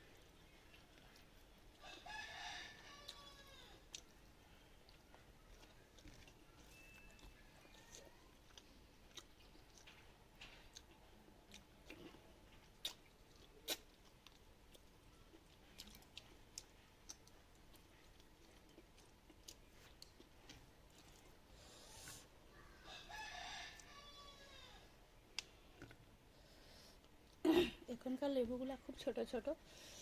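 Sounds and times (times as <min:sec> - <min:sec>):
quiet chewing: 0:00.0 - 0:24.5, 0:25.1 - 0:27.5
mouth clicks and smacks: 0:12.7 - 0:21.4.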